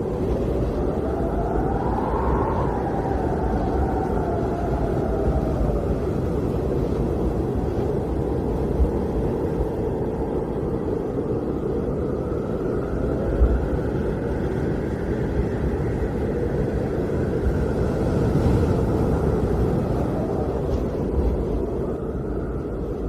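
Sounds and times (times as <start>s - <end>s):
blizzard wind blowing: 0.0s - 23.0s.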